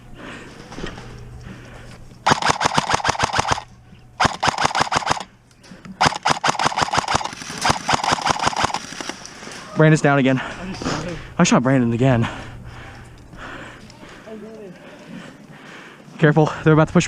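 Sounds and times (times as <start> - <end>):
airsoft gun firing bursts: 2.2 - 5.3, 6.0 - 9.2.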